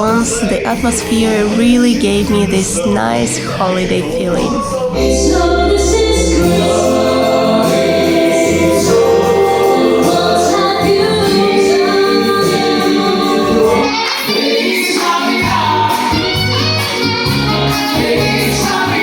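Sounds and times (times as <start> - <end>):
voices singing together: 0.0 - 19.0
backing music: 5.0 - 19.0.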